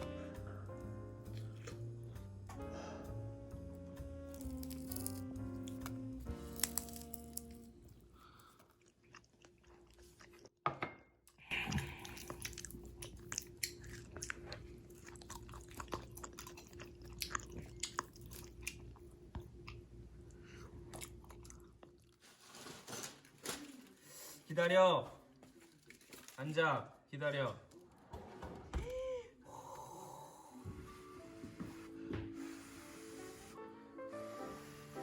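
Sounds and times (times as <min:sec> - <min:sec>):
person chewing crunchy food: 0:04.3 - 0:10.6, 0:11.3 - 0:19.8, 0:20.5 - 0:22.2.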